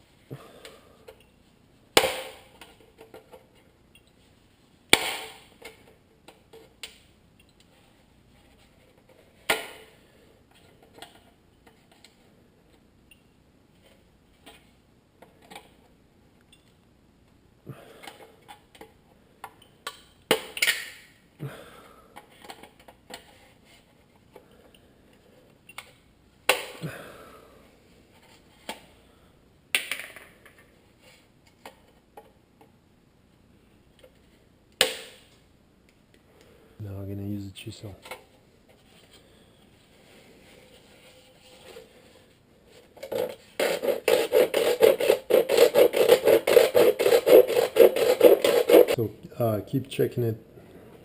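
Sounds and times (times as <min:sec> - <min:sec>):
tool scraping plastic: 0:42.7 - 0:49.0.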